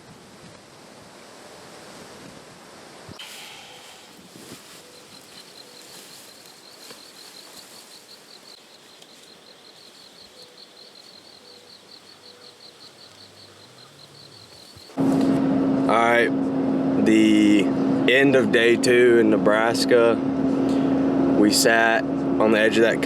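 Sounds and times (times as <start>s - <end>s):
steady outdoor hiss: 0.0s - 16.3s
insect chirping: 3.1s - 15.0s.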